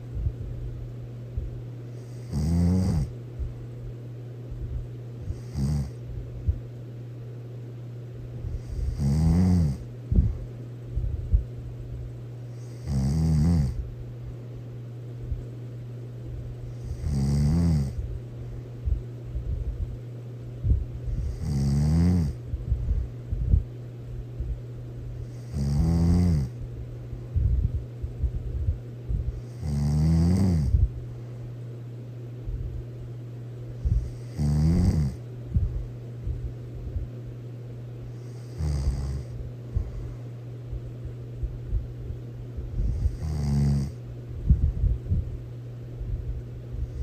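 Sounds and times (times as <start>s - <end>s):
steady low hum: 0.0s - 47.0s
person snoring loudly: 2.0s - 3.1s, 5.3s - 6.0s, 8.6s - 9.8s, 12.6s - 13.8s, 16.8s - 18.0s, 21.2s - 22.4s, 25.3s - 26.6s, 29.5s - 30.8s, 34.0s - 35.2s, 38.4s - 39.3s, 42.8s - 44.0s
soft low puffs: 22.4s - 23.8s, 26.6s - 29.4s, 44.4s - 47.0s.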